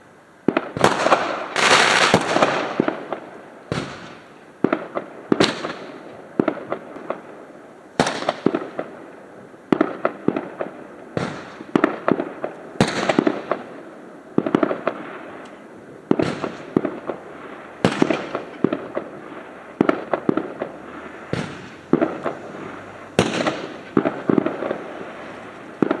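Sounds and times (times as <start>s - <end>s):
fireworks bangs: 0.4s - 26.0s
fireworks crackling pops: 0.4s - 26.0s.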